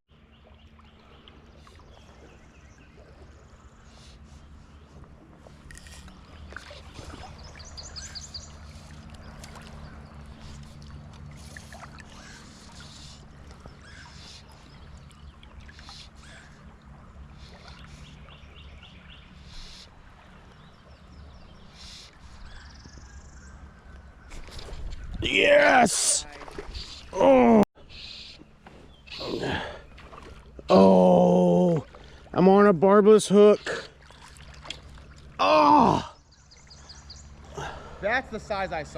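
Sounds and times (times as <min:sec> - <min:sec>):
boat motor humming: 0:00.1 - 0:38.9
high bird trills: 0:27.8 - 0:30.0.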